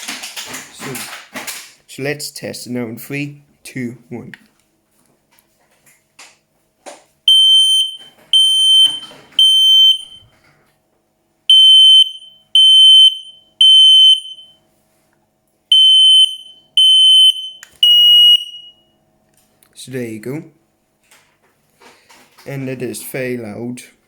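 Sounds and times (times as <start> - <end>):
smoke alarm high-pitched beeps: 7.3 - 10.2, 11.5 - 14.6, 15.7 - 18.9.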